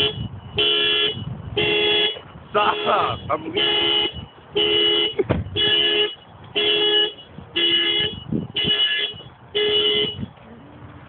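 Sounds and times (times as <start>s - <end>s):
car horn honking in a pulse: 0.0s - 10.3s.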